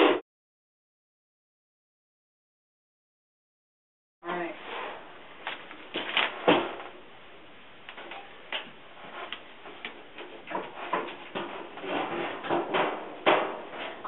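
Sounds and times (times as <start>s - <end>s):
dryer panels knocking and clattering: 5.5s - 7.0s, 7.9s - 14.0s.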